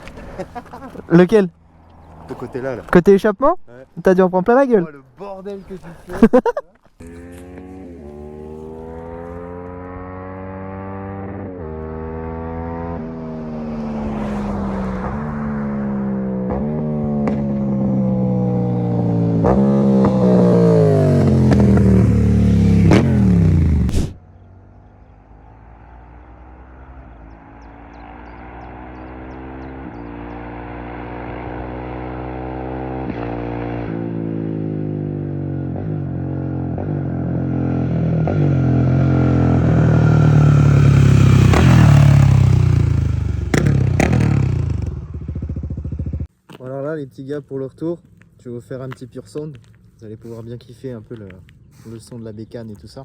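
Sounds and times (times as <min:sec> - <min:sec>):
motorcycle engine accelerating: 0:00.0 - 0:02.9, 0:07.0 - 0:46.3
quieter motorcycle engine: 0:00.0 - 0:03.8, 0:06.8 - 0:46.7, 0:47.4 - 0:53.0.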